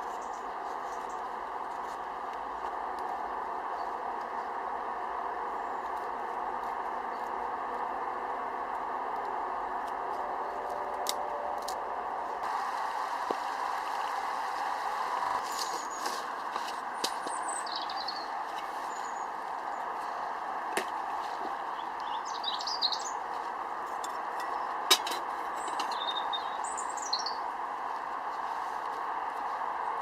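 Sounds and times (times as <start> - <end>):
small birds chirping: 0.0 - 1.4, 13.4 - 20.4, 21.0 - 24.9, 25.5 - 27.5
steady background hiss: 11.0 - 30.0.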